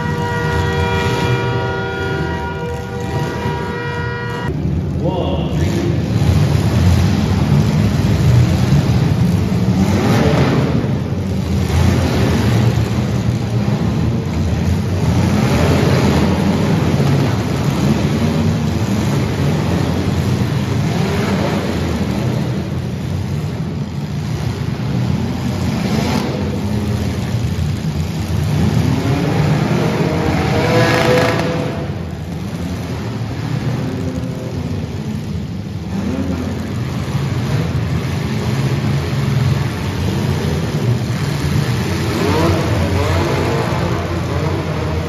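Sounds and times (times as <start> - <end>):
car engines revving: 0.0 - 45.0
low engine rumble: 0.0 - 45.0.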